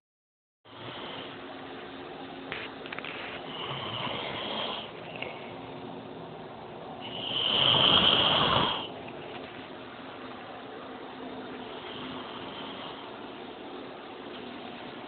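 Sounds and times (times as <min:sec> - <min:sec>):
snoring: 0:03.5 - 0:05.4, 0:07.0 - 0:08.9, 0:11.8 - 0:13.1.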